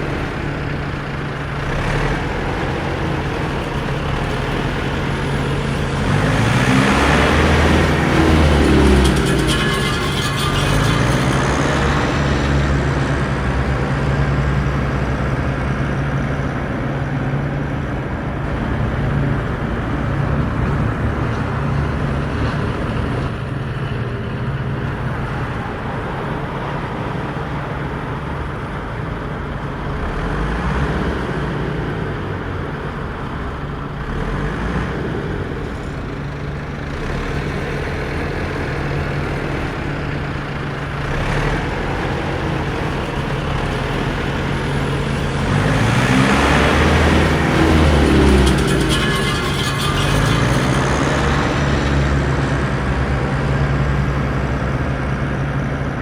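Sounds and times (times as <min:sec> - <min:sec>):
road and driving noise: 0:00.0 - 0:56.0
vehicle engine humming: 0:00.0 - 0:56.0.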